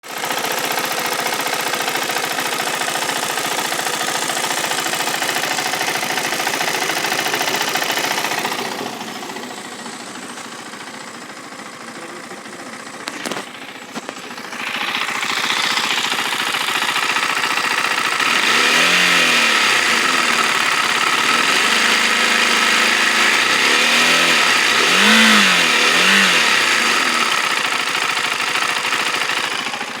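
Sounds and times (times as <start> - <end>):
motorcycle engine ticking: 0.0 - 30.0
engine revving: 13.1 - 30.0.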